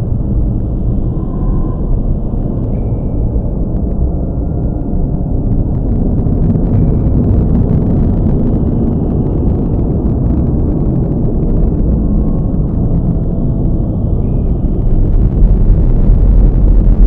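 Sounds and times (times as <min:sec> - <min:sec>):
deep steady rumble: 0:00.0 - 0:17.0
faint crackles: 0:03.6 - 0:17.0.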